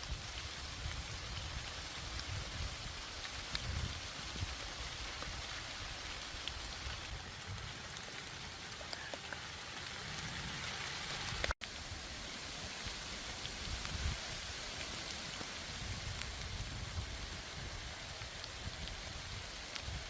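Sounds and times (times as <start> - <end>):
rain hiss: 0.0 - 20.0
raindrop ticks: 0.4 - 11.6, 17.8 - 20.0.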